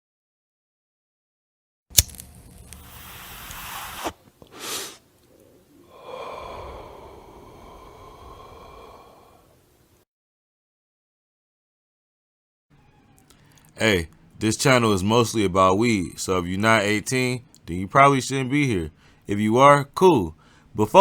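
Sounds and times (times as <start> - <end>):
person breathing in and out: 2.8 - 9.6, 18.9 - 19.3, 20.4 - 20.8
short puff of breath: 2.9 - 5.0.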